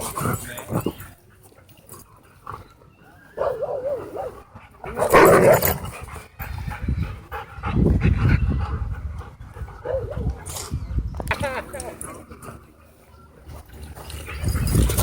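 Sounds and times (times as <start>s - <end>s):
dog barking harshly: 5.0s - 5.7s.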